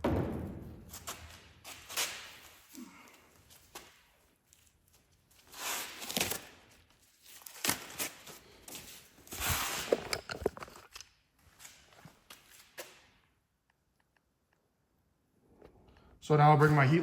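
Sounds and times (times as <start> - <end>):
rustling and handling noise: 2.6 - 12.8.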